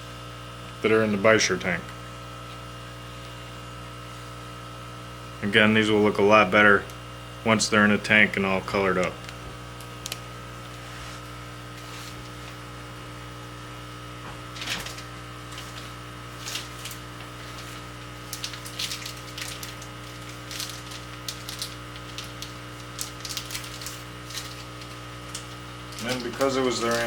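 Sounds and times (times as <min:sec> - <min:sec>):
electrical hum: 0:00.0 - 0:27.0
light clicks and crinkles: 0:14.6 - 0:27.0.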